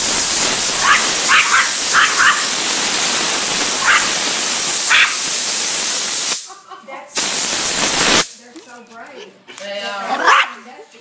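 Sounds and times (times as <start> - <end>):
loud steady hiss: 0.0 - 8.4.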